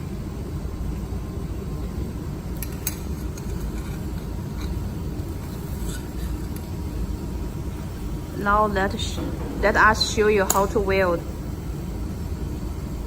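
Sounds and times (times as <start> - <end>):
low machinery rumble: 0.0 - 13.0.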